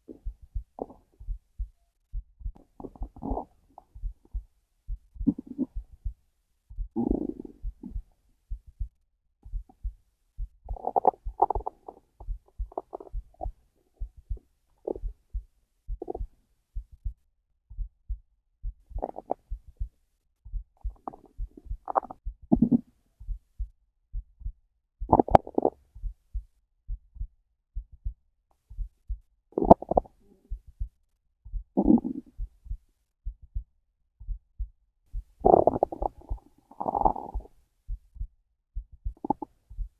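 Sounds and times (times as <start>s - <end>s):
low heartbeat: 0.0s - 39.9s
stomach growling and gurgling: 2.6s - 3.9s, 5.2s - 5.8s, 7.0s - 8.0s, 10.7s - 13.6s, 14.8s - 15.1s, 16.0s - 16.3s, 19.0s - 19.5s, 20.8s - 22.9s, 25.1s - 25.8s, 29.6s - 30.6s, 31.8s - 32.4s, 35.4s - 37.5s, 39.2s - 39.6s.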